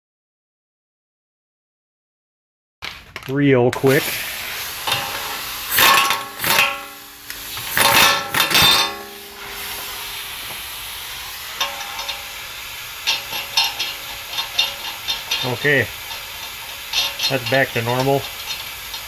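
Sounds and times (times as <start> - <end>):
metal tools clanking: 2.8 - 19.0
loud ringing metal strikes: 5.8 - 10.4.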